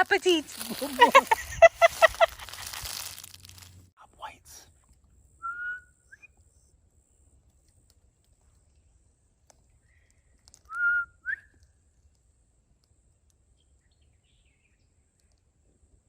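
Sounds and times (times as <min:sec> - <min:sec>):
two-note whistle: 0:05.4 - 0:06.3, 0:10.7 - 0:11.6.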